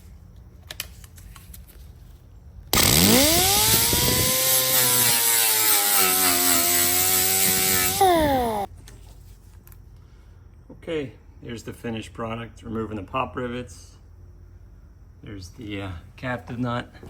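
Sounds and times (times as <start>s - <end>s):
electric grinder grinding metal: 2.8s - 8.7s.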